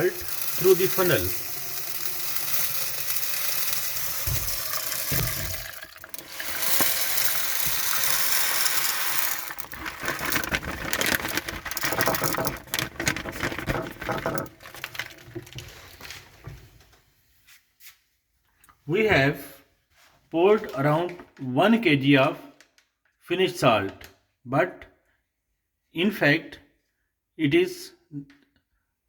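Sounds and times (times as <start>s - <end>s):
salt pouring through funnel: 0.0s - 16.2s.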